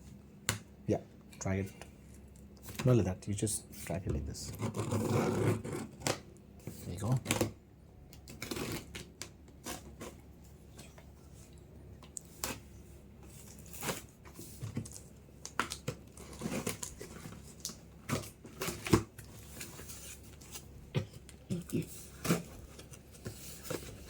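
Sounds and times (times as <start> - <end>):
cardboard rustling and scraping: 16.0 - 24.0.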